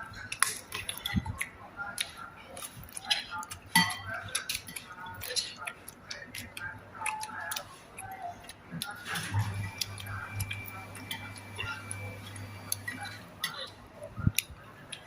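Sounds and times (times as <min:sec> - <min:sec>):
low steady hum: 0:02.7 - 0:15.0.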